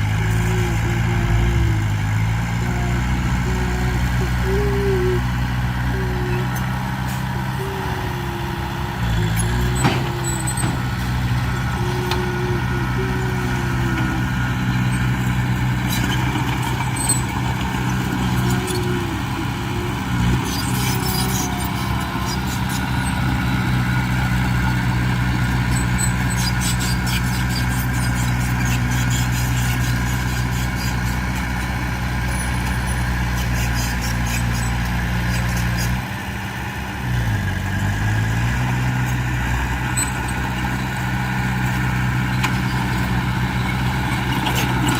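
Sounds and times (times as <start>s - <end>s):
heavy diesel engine under load: 0.0s - 44.9s
light metal clanks and squeaks: 9.2s - 12.2s.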